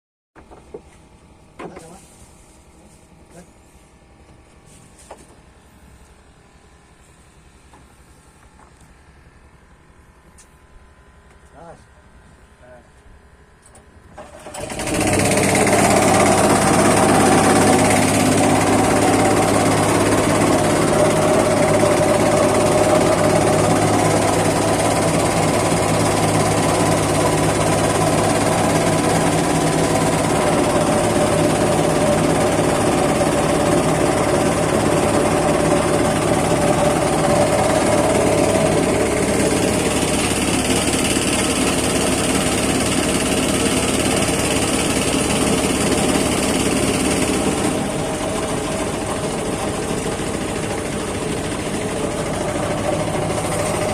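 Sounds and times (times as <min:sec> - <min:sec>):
small engine running: 0:14.1 - 0:53.9.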